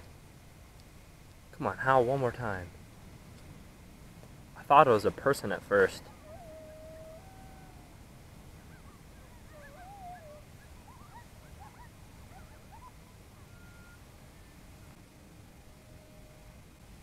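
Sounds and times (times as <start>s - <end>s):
coyotes yipping: 5.7s - 15.0s
coyote howl: 5.8s - 16.4s.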